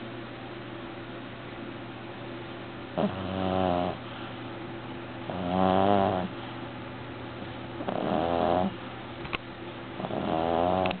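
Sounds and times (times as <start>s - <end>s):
cat snoring: 3.0s - 4.0s, 5.3s - 6.3s, 7.8s - 8.8s, 10.0s - 11.0s.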